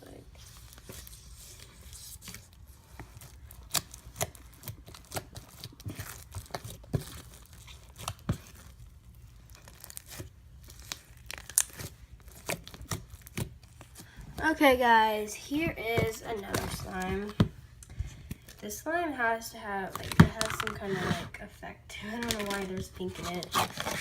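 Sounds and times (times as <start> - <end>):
slime crackling and popping: 3.2 - 14.0.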